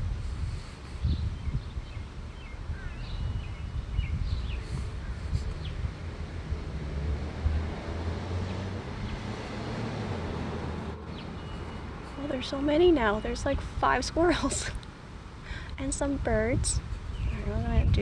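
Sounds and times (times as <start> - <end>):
steady low rumble: 0.0 - 18.0
birds chirping: 0.6 - 6.4, 10.4 - 18.0.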